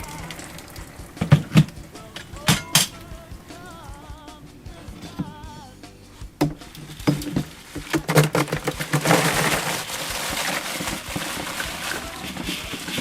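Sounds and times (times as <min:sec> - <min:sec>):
crawfish shells clattering: 0:06.4 - 0:13.0.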